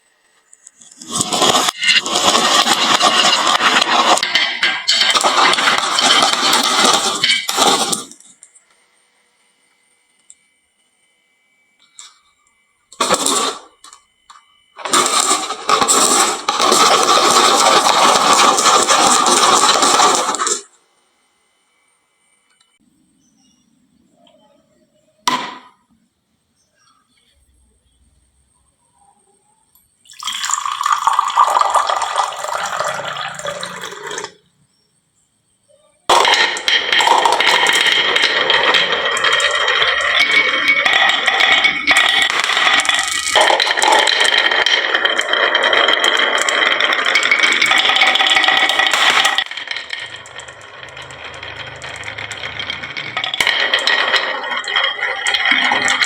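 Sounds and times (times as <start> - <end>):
marbles rolling down wooden slope: 0.7 - 8.5, 13.0 - 20.7, 30.1 - 34.5, 36.1 - 56.0.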